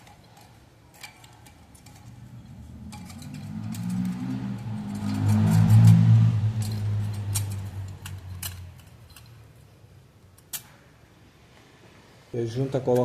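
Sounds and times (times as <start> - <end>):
metallic clinks of engine parts: 0.0 - 9.7
engine running: 1.8 - 9.3.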